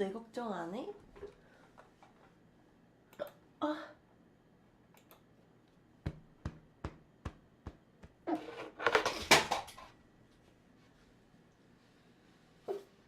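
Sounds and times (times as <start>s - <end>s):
objects clattering and crinkling: 8.3s - 10.0s.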